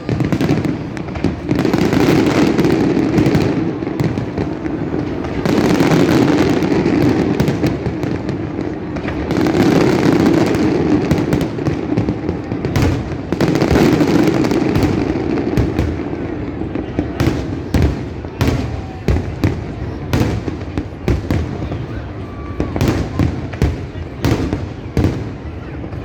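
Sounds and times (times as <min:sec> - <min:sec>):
fireworks bursting: 0:00.0 - 0:26.0.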